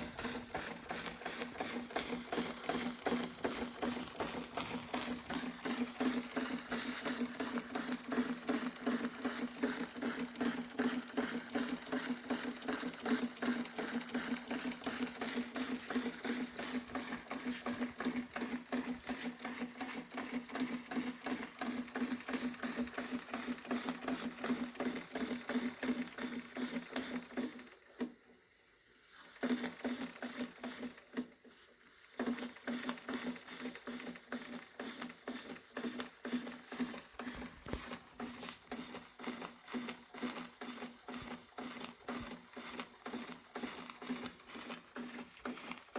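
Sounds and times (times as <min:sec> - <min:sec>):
toy steam engine ticking: 0:00.0 - 0:28.1.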